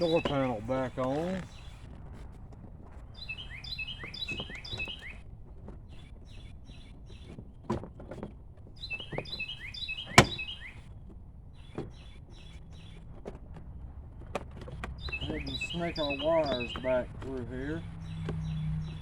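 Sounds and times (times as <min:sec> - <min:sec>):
songbird chirping: 0:00.0 - 0:19.0
plastic door panel knocks and clicks: 0:10.0 - 0:10.5.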